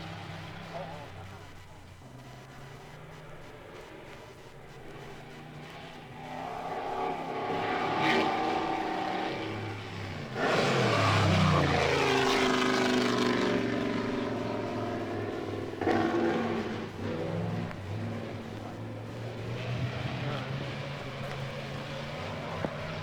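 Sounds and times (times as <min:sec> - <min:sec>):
racing car engine passing: 0:04.9 - 0:23.0.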